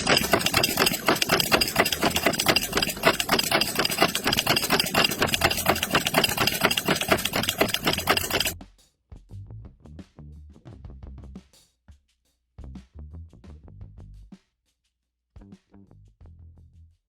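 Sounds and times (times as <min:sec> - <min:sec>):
machine running with rattling knock: 0:00.0 - 0:08.6.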